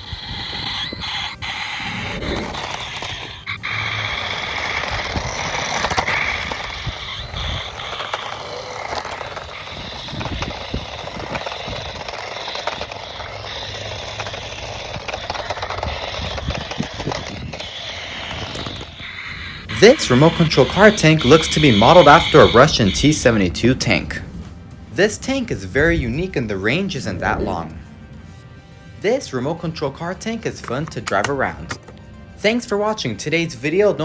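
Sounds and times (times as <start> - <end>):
small electric motor running: 0.0 - 23.2
plastic wheels rattling and scraping: 0.0 - 24.3, 30.0 - 32.0.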